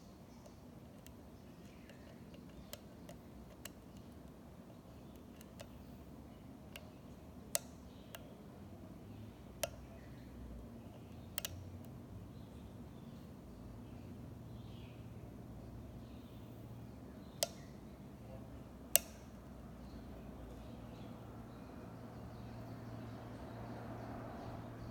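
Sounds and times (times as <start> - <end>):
faint background hum: 0.0 - 24.9
lock pick metallic clicks: 0.4 - 5.8, 6.6 - 8.3, 10.9 - 12.0, 17.4 - 17.7, 18.9 - 19.4.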